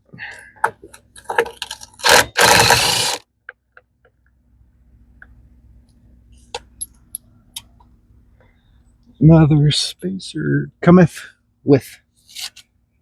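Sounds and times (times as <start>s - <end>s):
cordless power driver zipping: 2.0s - 3.2s.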